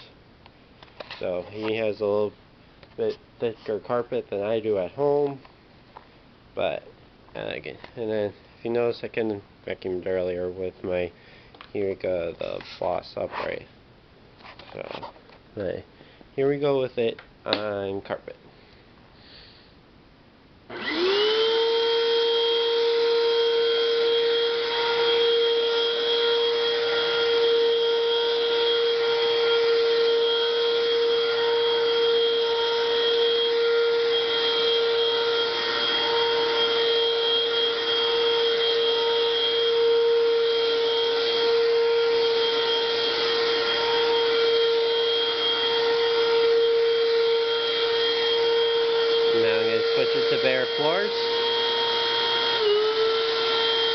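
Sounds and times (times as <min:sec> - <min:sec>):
stick vacuum motor whine: 0:20.7 - 0:53.9.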